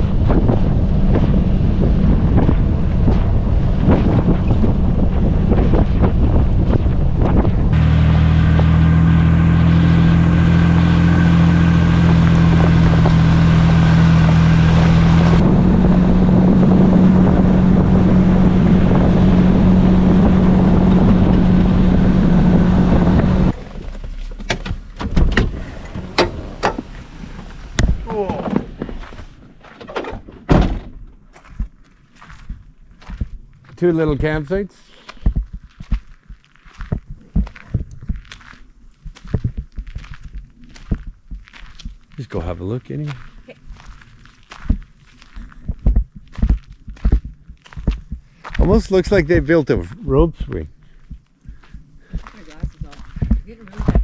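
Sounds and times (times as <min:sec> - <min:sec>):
wind noise on microphone: 0:00.0 - 0:07.8, 0:12.0 - 0:23.6, 0:35.2 - 0:42.0, 0:50.1 - 0:54.0
car engine running: 0:06.7 - 0:31.7
sharp clicks and knocks: 0:23.5 - 0:31.7.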